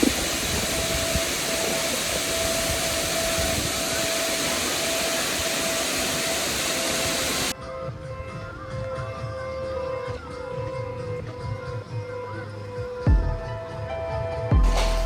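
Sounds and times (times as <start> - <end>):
waterfall roaring: 0.0 - 7.5.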